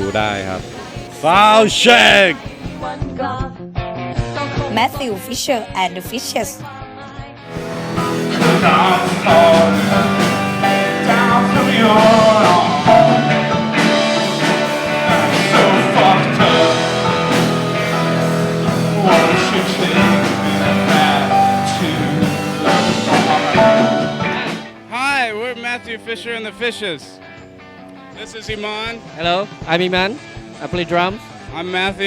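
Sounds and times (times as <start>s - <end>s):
rock band music: 0.0s - 3.0s, 7.4s - 32.0s
person singing: 7.5s - 24.7s.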